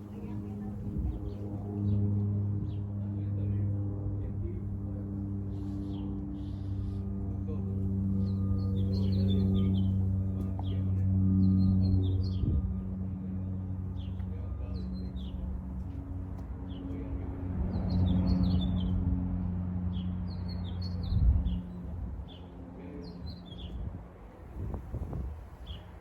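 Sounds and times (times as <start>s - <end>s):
steady low hum: 0.0s - 26.0s
small birds chirping: 8.1s - 12.6s.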